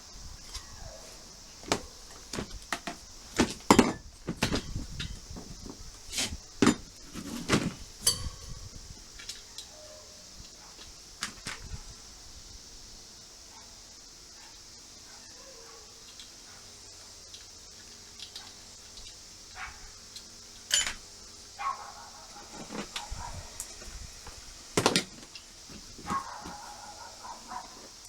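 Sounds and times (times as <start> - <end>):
metallic clinks of tools: 8.0 - 8.7, 20.7 - 21.0.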